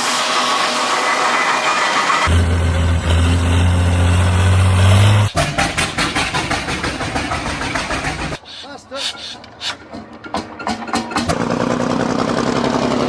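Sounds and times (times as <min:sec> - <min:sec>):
diesel tractor engine running: 0:00.0 - 0:08.4.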